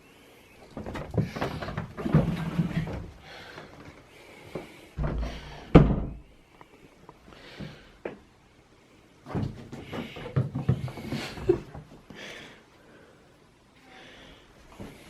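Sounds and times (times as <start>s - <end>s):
knocks and scuffling thumps: 0.7s - 4.0s, 4.6s - 6.3s, 9.2s - 12.0s.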